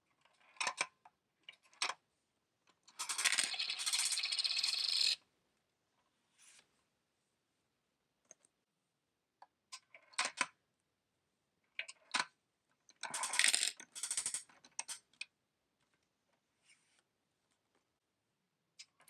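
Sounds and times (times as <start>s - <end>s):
coins clinking into machine: 3.0s - 5.2s, 13.1s - 14.4s
vending mechanism rattling: 13.2s - 14.4s.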